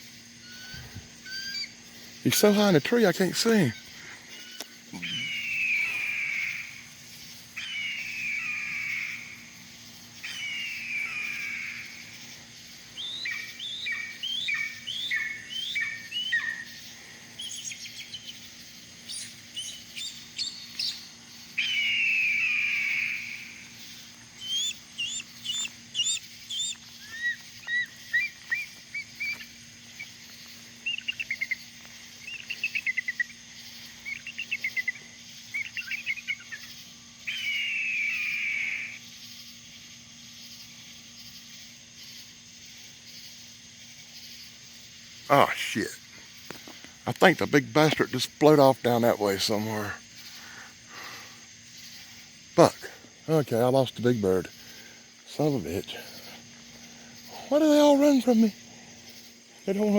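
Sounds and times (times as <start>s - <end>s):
bird calling and trilling: 0.4s - 2.7s, 3.4s - 39.0s.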